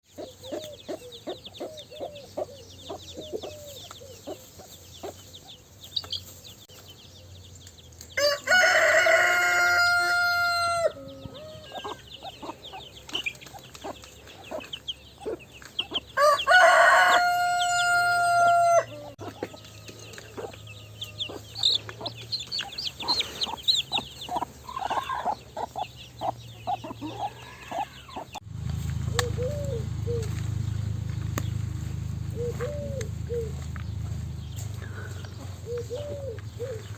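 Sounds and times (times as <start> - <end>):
small bird calls: 0.0 - 8.2, 10.8 - 28.4, 29.1 - 36.9
hens clucking: 0.1 - 6.4, 8.8 - 36.9
rooster crowing: 8.2 - 12.0, 16.2 - 21.8, 27.0 - 28.3
low steady rumble: 28.0 - 36.9.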